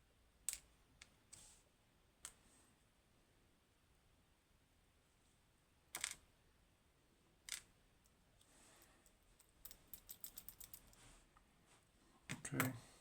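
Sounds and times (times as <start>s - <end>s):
metal lock parts clicking: 9.6s - 11.0s.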